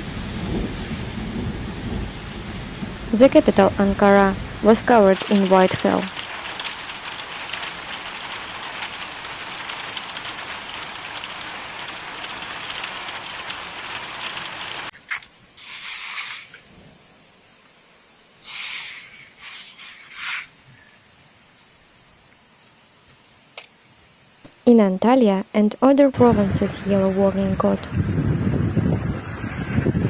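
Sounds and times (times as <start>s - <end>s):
hail and heavy rain pelting: 3.0s - 14.9s.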